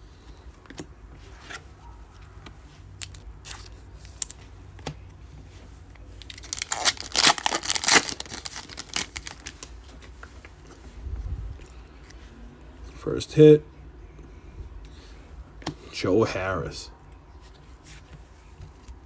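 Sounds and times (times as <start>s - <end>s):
wrapper rustling: 3.0s - 4.4s, 6.2s - 10.2s
wrapper tearing and crinkling: 3.0s - 4.4s, 6.2s - 9.7s.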